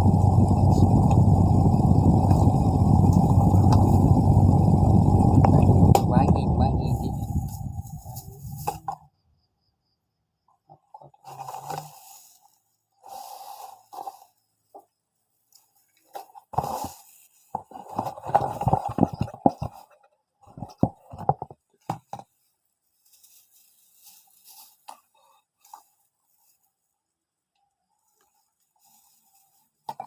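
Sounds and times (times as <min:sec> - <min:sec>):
knocks and thumps: 0:17.5 - 0:19.9.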